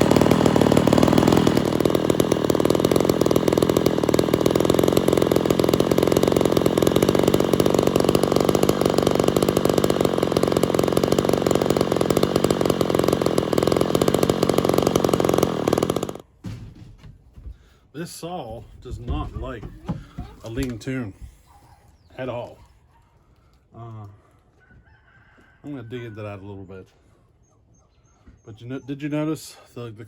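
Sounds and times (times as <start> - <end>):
chainsaw running: 0.0 - 16.3, 19.1 - 21.0.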